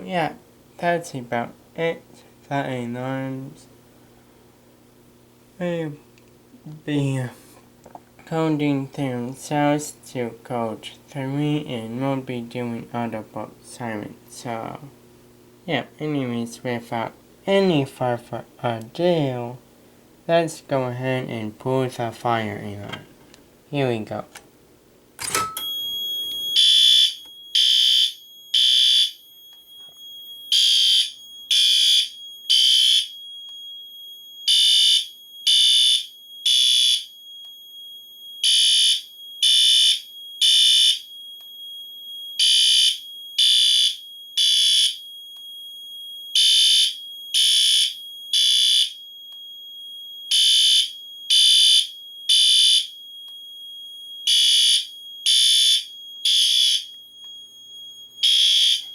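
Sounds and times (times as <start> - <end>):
fire alarm pull station click: 25.2 - 33.7, 58.2 - 58.9
fire alarm horn blasts: 25.8 - 58.9.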